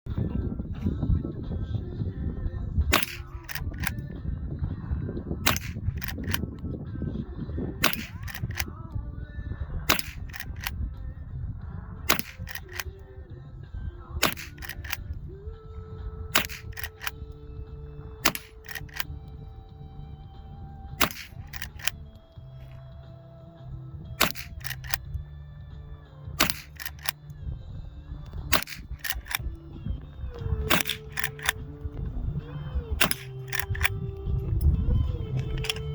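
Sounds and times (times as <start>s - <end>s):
background music: 0.1s - 35.9s
rifle lever clicks: 2.9s - 4.1s, 5.4s - 6.7s, 7.8s - 8.8s, 9.9s - 10.8s, 12.1s - 13.1s, 14.2s - 15.2s, 16.3s - 19.4s, 20.9s - 23.0s, 24.2s - 25.2s, 26.4s - 27.4s, 28.2s - 35.9s
rifle shots: 2.9s - 4.1s, 5.4s - 6.5s, 7.8s - 8.8s, 9.9s - 11.0s, 12.1s - 13.1s, 14.2s - 15.2s, 16.3s - 19.6s, 20.4s - 23.0s, 24.0s - 27.4s, 28.1s - 35.9s.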